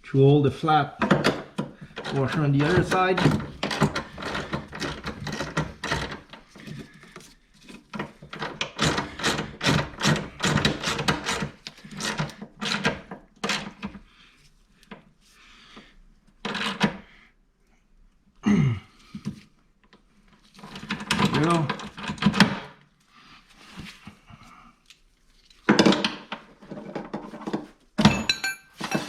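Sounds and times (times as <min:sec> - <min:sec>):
wrench clanking on metal bolt: 0:01.0 - 0:06.3.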